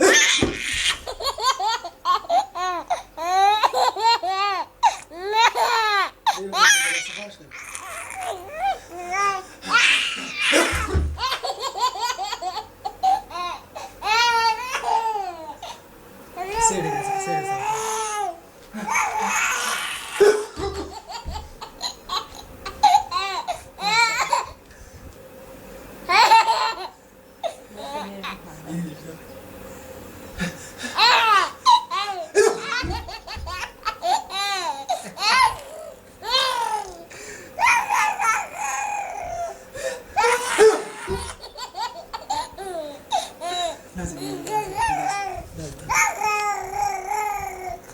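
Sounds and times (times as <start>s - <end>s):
baby laughing: 0.0s - 4.7s, 7.8s - 15.8s, 17.7s - 24.6s, 26.1s - 28.0s, 31.0s - 37.0s, 40.2s - 43.8s.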